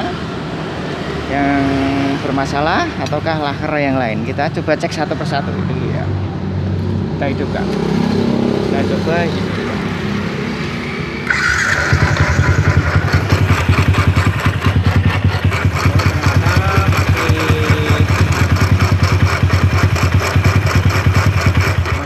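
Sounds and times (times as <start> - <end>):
motorcycle engine running roughly: 11.3 - 22.0.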